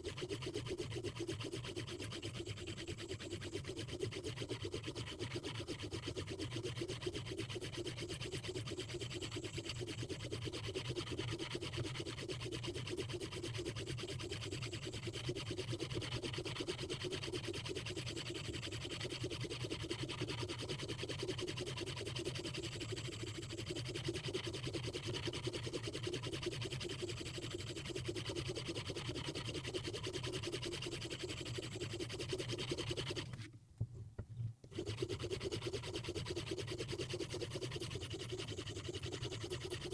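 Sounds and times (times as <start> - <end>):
stone rubbing on knife edge: 21.6 - 33.5, 34.7 - 39.9.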